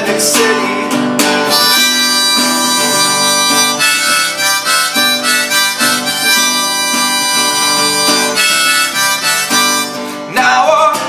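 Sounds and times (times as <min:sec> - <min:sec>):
strummed acoustic guitar: 0:00.0 - 0:11.0
harmonica playing chords: 0:01.4 - 0:10.3.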